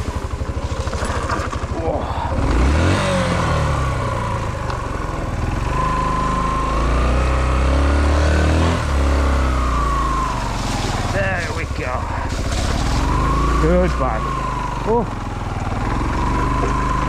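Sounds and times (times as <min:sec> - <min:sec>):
dirt bike engine revving: 0:00.0 - 0:17.0.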